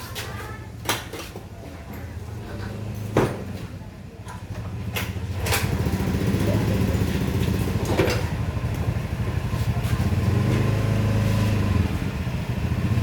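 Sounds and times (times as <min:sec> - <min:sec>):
small engine running: 0:05.4 - 0:07.9.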